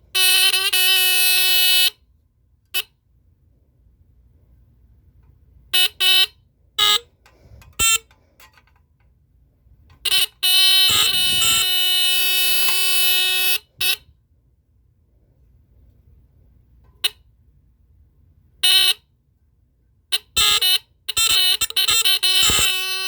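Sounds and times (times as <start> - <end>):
alarm horn blasts: 0.1 - 2.0, 5.7 - 8.2, 10.0 - 14.1, 20.4 - 23.0.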